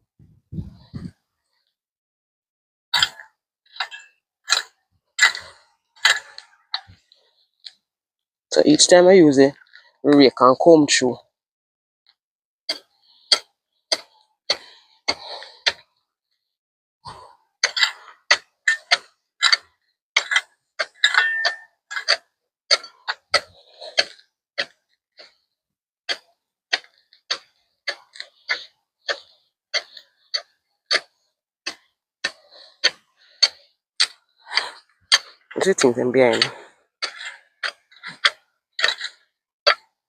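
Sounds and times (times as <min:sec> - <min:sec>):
rake scraping soil: 0:34.4 - 0:39.3.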